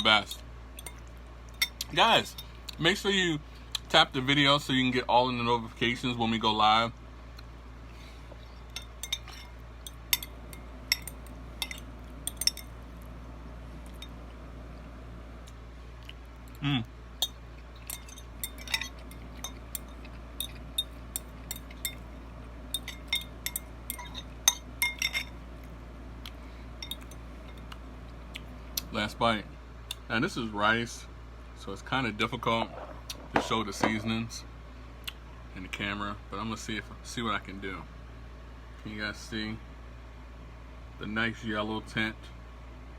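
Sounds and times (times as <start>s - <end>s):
utensil clinking against a bowl: 8.7s - 12.8s, 17.2s - 25.4s, 26.8s - 27.8s, 32.6s - 34.2s.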